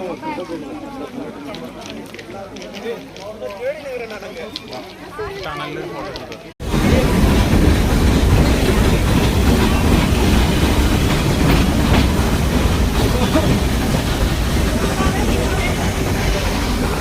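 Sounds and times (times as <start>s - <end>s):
train wheels rumbling on rails: 6.6s - 17.0s.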